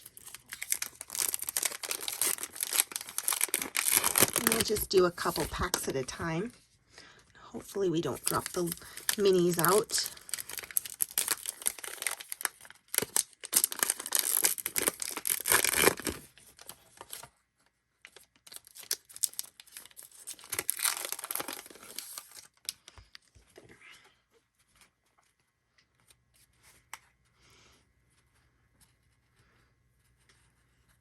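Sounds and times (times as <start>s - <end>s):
card pack wrappers tearing: 0.0s - 5.8s, 8.2s - 17.2s, 18.1s - 22.8s.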